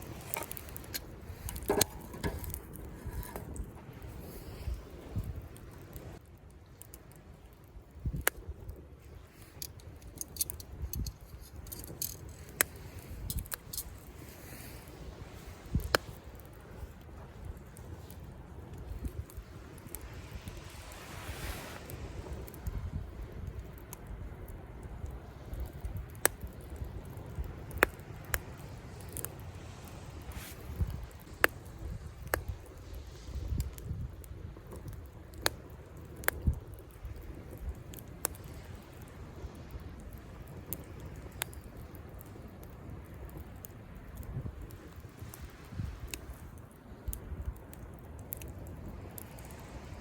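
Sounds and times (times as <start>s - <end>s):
campfire crackling and popping: 0.0s - 50.0s
faint surf rumble: 0.0s - 50.0s
waves on shore: 12.0s - 23.4s, 27.2s - 33.5s, 44.7s - 46.5s, 48.6s - 50.0s.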